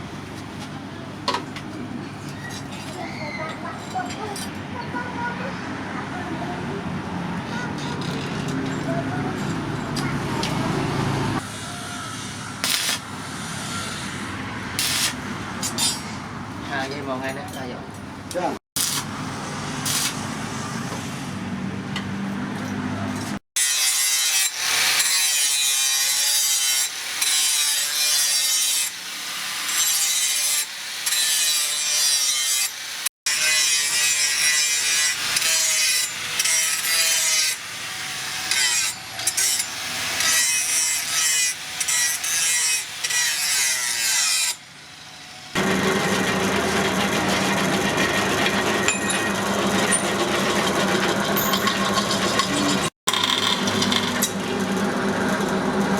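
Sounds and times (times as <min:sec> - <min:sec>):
file rasping on steel blade: 0:45.5 - 0:54.8.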